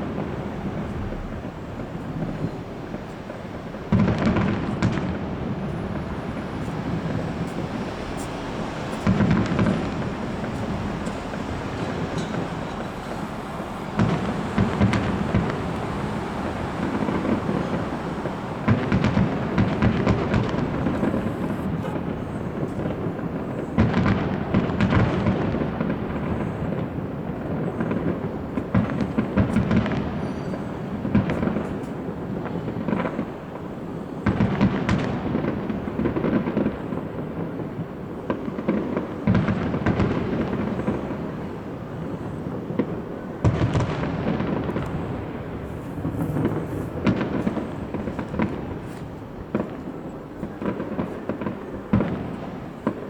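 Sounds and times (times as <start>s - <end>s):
booming echoes: 0.0s - 23.1s
firework crackling: 0.0s - 53.0s
firework shell bursts: 0.1s - 25.1s.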